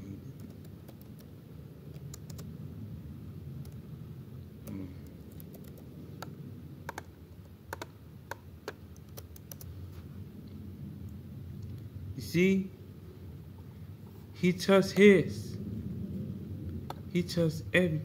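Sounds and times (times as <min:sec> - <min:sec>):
low background noise: 0:00.0 - 0:18.0
computer keys clicking: 0:00.4 - 0:01.3, 0:01.9 - 0:02.5, 0:03.6 - 0:03.8, 0:04.6 - 0:06.3, 0:06.9 - 0:09.7.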